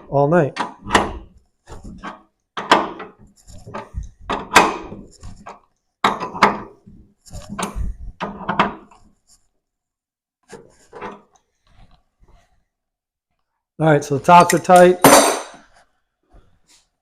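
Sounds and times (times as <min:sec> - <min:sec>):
hand tools clanking on metal: 0:14.3 - 0:15.7.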